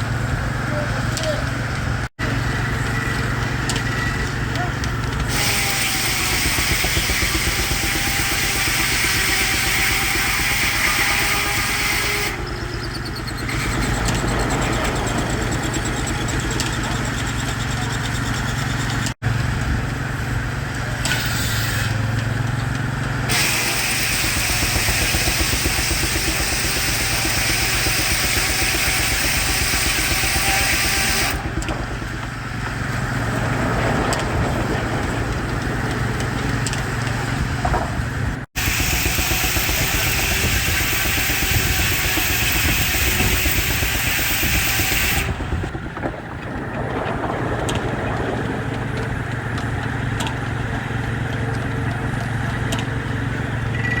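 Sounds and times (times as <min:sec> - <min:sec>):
sawmill low hum: 0:00.0 - 0:54.0
saw blade cutting log: 0:05.2 - 0:19.2, 0:21.0 - 0:22.1, 0:23.3 - 0:32.2, 0:38.6 - 0:45.4.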